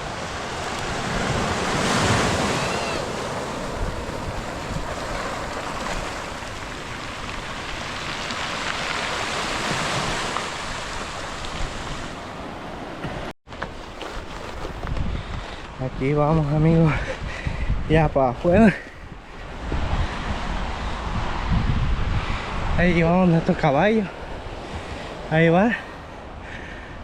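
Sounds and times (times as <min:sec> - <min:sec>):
wind buffeting microphone: 0:00.0 - 0:12.2, 0:14.2 - 0:27.0
waves washing in: 0:00.0 - 0:13.3, 0:18.9 - 0:26.6.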